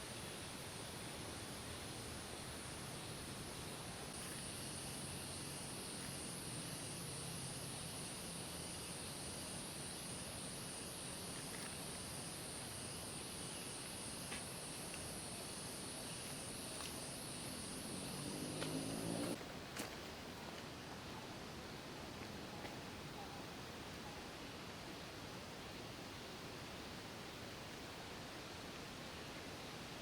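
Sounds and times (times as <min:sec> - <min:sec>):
insects trilling: 0:00.0 - 0:19.4
faint outdoor background noise: 0:00.0 - 0:30.0.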